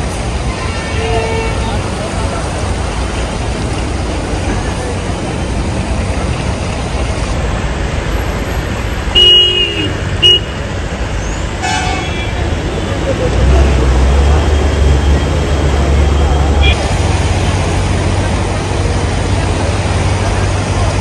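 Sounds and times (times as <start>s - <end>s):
road traffic rumble: 0.0s - 21.0s
vehicle horn honking: 0.4s - 1.8s, 9.1s - 10.6s, 11.6s - 12.4s, 15.9s - 16.9s.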